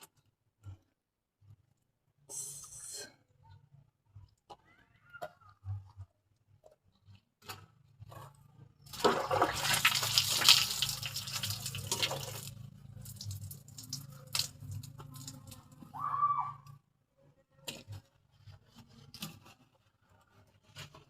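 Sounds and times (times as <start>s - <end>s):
water pouring and splashing: 8.8s - 15.9s
water dripping: 8.9s - 15.9s.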